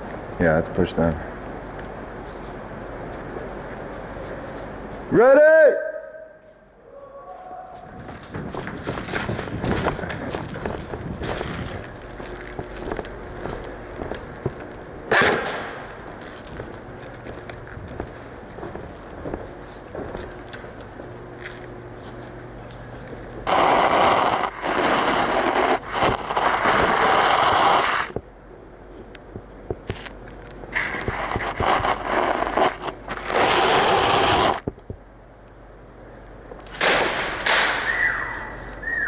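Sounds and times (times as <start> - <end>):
automatic airsoft gunfire: 15.1 - 15.9.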